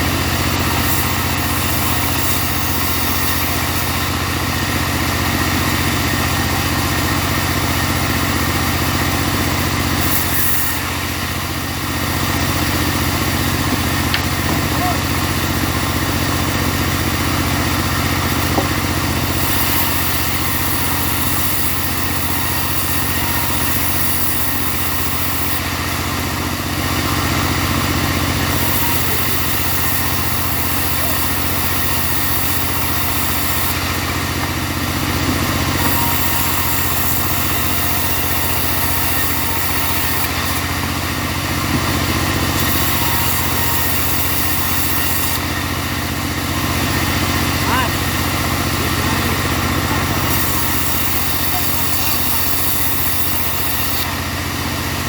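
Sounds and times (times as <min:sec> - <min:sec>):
sawmill engine humming: 0:00.0 - 0:55.0
blade rushing through wood: 0:41.6 - 0:54.2.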